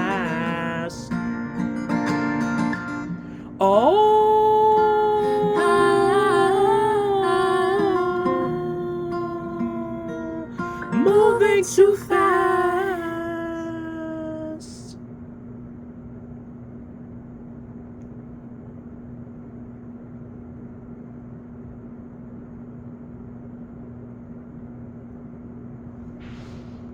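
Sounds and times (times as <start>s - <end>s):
low hum with faint hiss: 0.0s - 26.9s
held sung note: 3.5s - 14.9s.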